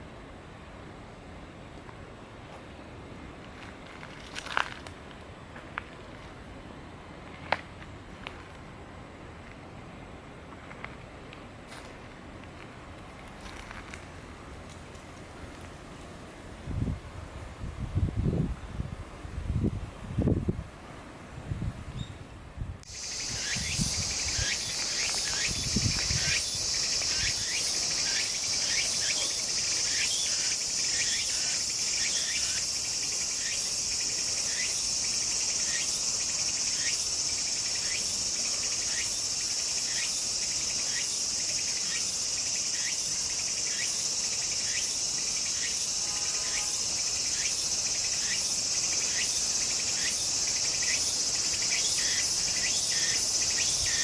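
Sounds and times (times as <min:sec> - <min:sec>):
insect chirps: 0:22.8 - 0:54.0
insects singing: 0:22.8 - 0:54.0.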